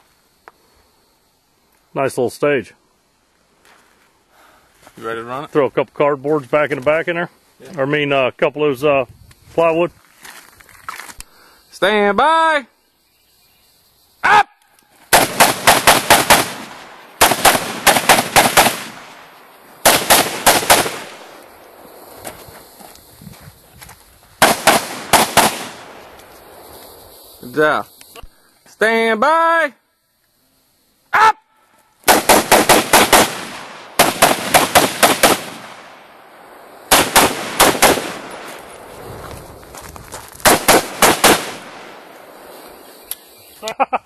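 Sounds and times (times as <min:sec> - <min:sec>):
rifle shots: 0:15.1 - 0:21.4, 0:24.4 - 0:26.0, 0:32.1 - 0:38.7, 0:40.4 - 0:42.4
gunshots with echo: 0:15.2 - 0:19.2, 0:19.8 - 0:21.3, 0:24.4 - 0:26.0, 0:32.1 - 0:35.9, 0:36.9 - 0:38.5, 0:40.4 - 0:41.9.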